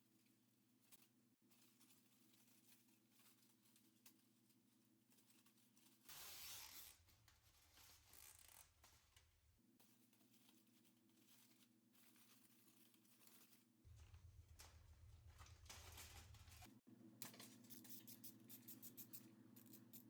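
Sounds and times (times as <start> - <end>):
soft rustle: 0.1 - 6.0, 9.8 - 16.7.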